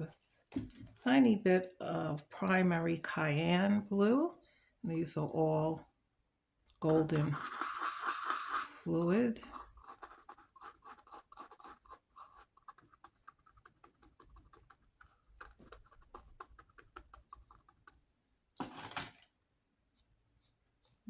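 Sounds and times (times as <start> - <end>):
paint brush ticks and scratches: 6.8 - 18.2, 19.9 - 21.0.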